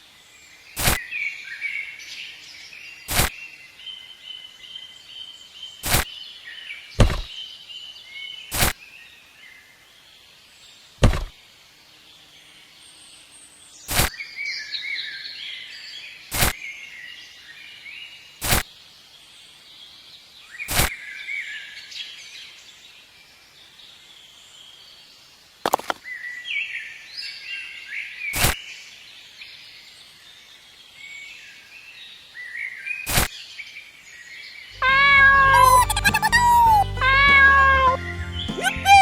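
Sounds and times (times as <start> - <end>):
birds chirping: 34.6 - 39.0
meow-like cry: 34.8 - 39.0.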